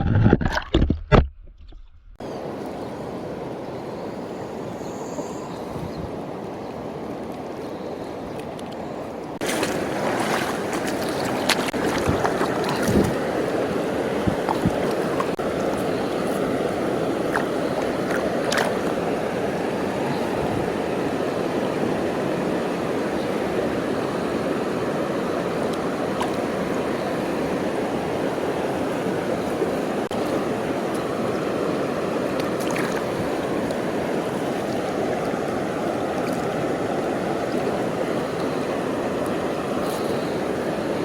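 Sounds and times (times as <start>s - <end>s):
stream flowing over rocks: 9.3s - 41.0s.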